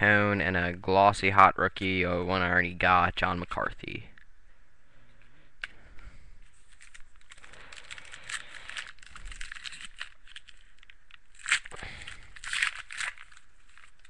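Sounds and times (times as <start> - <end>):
plastic wrapper crinkling: 6.4 - 14.0.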